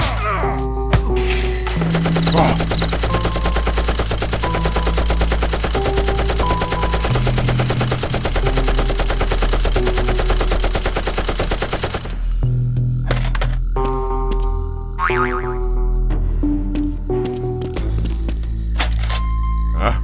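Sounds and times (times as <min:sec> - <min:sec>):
rapid automatic gunfire: 0:01.9 - 0:12.2.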